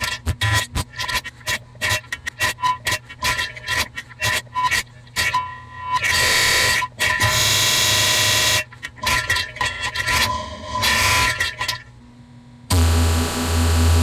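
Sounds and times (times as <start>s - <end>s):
distorted horn-like blasts: 12.7s - 14.0s.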